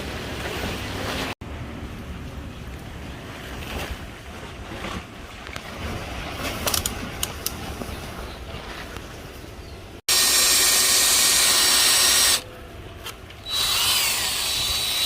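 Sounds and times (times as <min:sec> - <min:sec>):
power drill whining: 0:10.1 - 0:12.4, 0:13.4 - 0:15.0.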